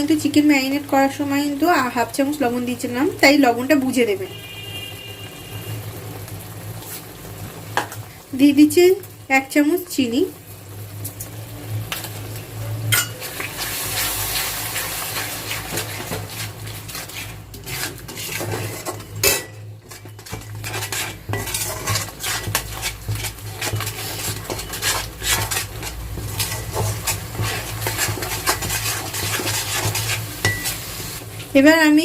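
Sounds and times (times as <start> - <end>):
spoon scraping metal pan: 12.9 - 31.2.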